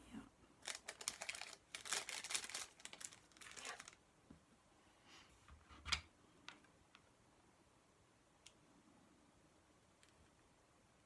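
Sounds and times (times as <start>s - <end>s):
paper crinkling and rustling: 0.6s - 4.0s.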